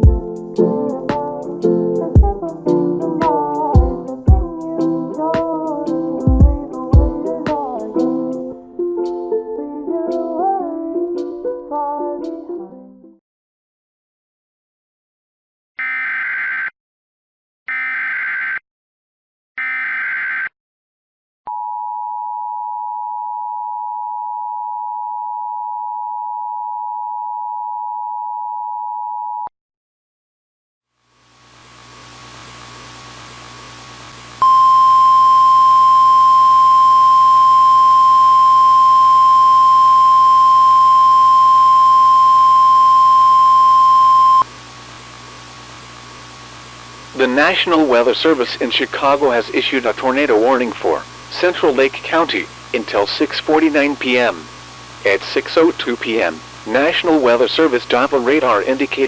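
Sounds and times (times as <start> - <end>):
faint hiss and hum: 31.1 - 59.0
high alert beep: 34.4 - 44.4.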